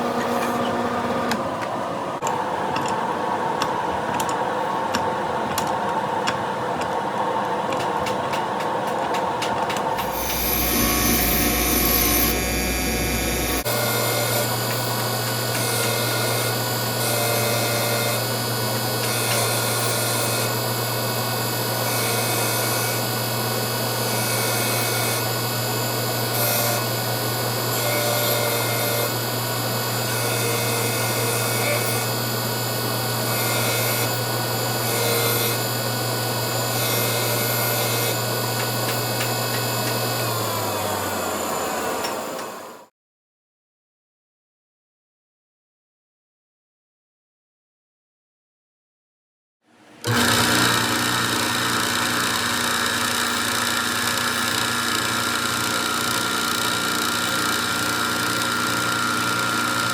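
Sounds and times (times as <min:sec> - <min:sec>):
grinding noise: 0:09.4 - 0:14.6
electric motor running: 0:10.0 - 0:42.8.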